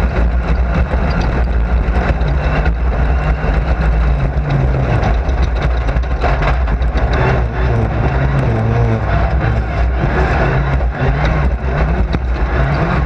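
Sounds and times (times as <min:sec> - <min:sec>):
dense rattle of knocks: 0:00.0 - 0:13.0
racing car engine running hard: 0:00.0 - 0:13.0.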